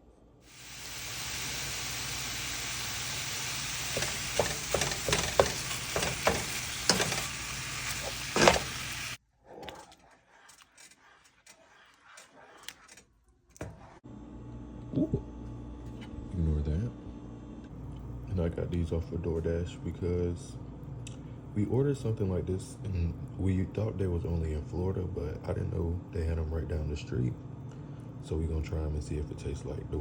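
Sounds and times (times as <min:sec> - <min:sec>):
food sizzling in frying: 0:00.5 - 0:09.2
stirring clicks and taps: 0:03.9 - 0:08.8, 0:09.6 - 0:13.9.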